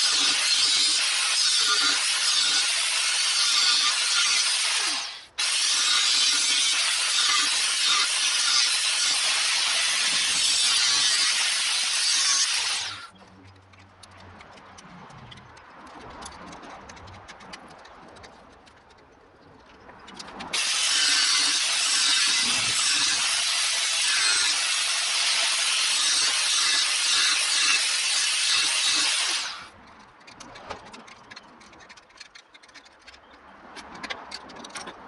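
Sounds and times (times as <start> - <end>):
power tool cutting steel: 0.0 - 13.1, 20.5 - 29.8.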